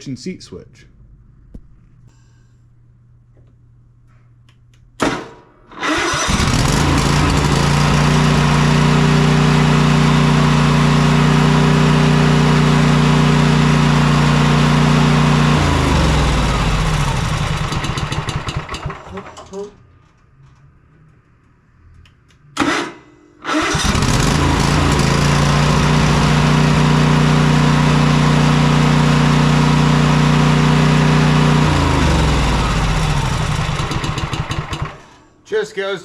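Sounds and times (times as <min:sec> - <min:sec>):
engine winding down: 0:05.8 - 0:19.4, 0:23.4 - 0:35.2
engine cranking and running: 0:05.8 - 0:19.6, 0:23.4 - 0:35.2.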